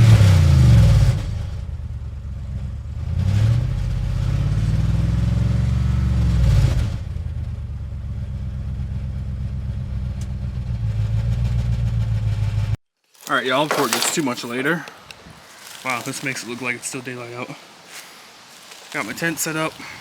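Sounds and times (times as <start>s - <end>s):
vehicle engine: 0.0s - 12.8s
road noise: 10.6s - 20.0s.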